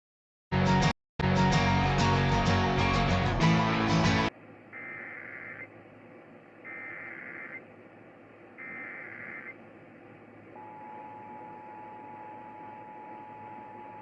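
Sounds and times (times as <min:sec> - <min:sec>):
harsh digital data bursts: 0:04.8 - 0:05.7, 0:06.7 - 0:07.6, 0:08.6 - 0:09.6.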